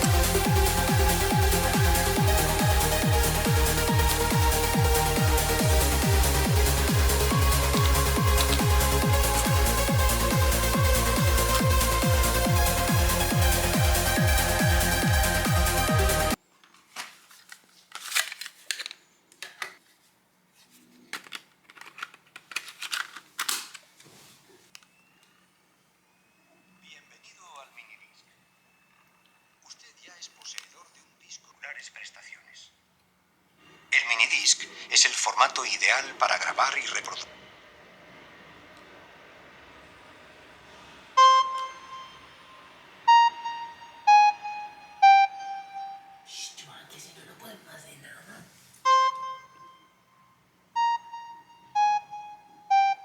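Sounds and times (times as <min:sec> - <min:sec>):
plastic parts clicking and rustling: 0:16.6 - 0:19.9, 0:20.9 - 0:24.1
struck ringing notes from speaker: 0:48.9 - 0:53.0.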